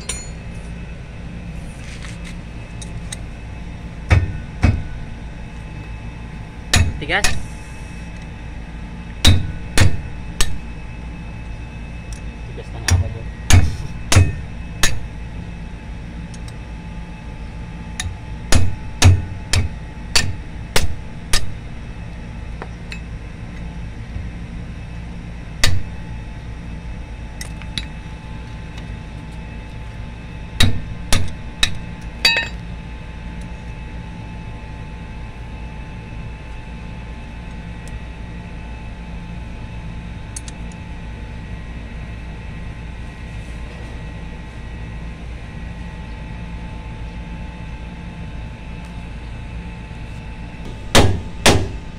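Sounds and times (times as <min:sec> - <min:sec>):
steady low hum: 0:00.0 - 0:51.9
hammer blows on metal: 0:50.6 - 0:51.9.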